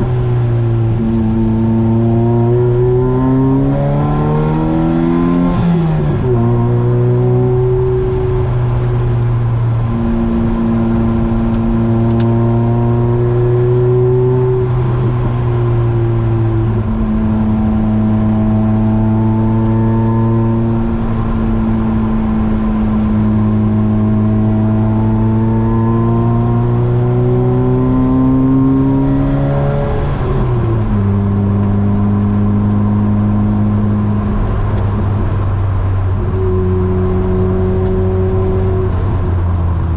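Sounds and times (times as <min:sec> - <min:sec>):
car engine running: 0:00.0 - 0:04.4, 0:05.4 - 0:39.9.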